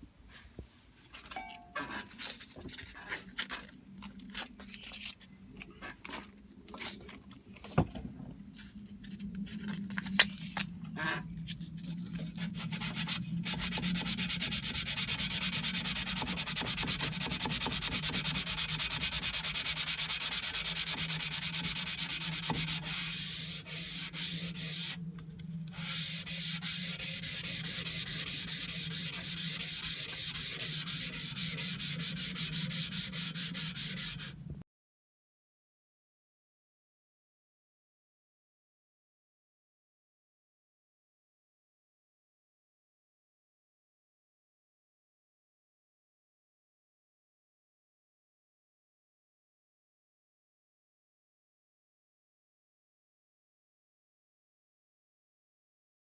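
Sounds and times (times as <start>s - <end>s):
sanding blade with abrasive paper: 12.2s - 25.0s, 25.7s - 34.4s.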